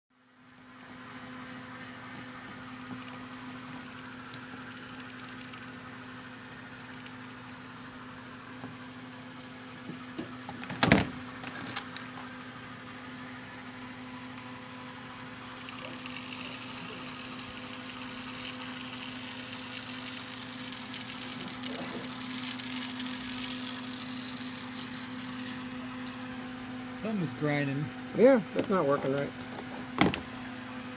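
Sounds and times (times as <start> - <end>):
model motor humming and grinding: 2.8 - 7.4, 13.5 - 30.9.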